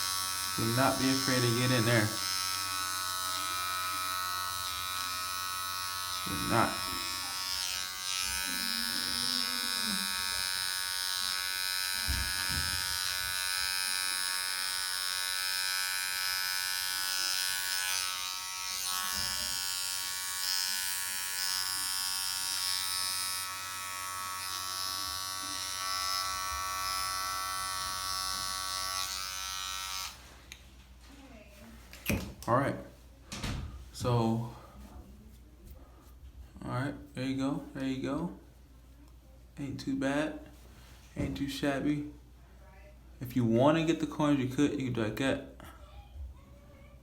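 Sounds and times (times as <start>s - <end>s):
electric hair clippers buzzing: 0.0s - 30.2s.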